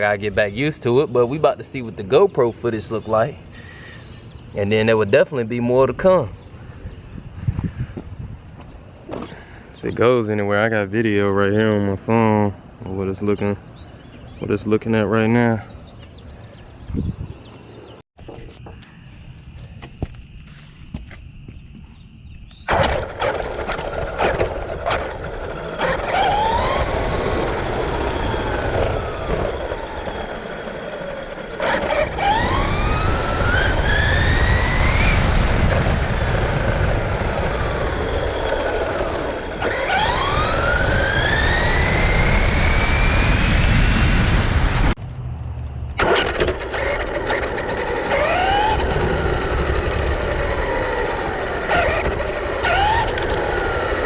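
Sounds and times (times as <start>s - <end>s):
tyres and wind rumble: 0.0s - 54.0s
electric motor whining: 22.7s - 45.0s, 46.0s - 54.0s.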